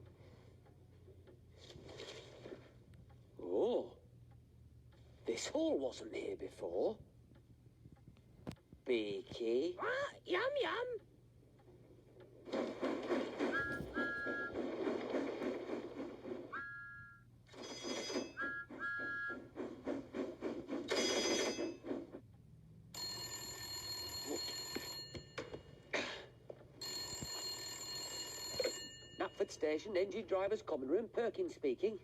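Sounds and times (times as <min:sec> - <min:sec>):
telephone bell ringing: 0:17.0 - 0:18.5, 0:20.9 - 0:21.8, 0:23.0 - 0:25.8, 0:26.8 - 0:29.7.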